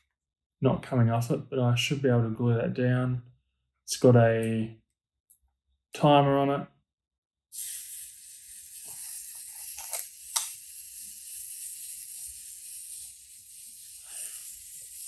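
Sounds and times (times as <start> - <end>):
camera self-timer buzzing: 7.5 - 15.0.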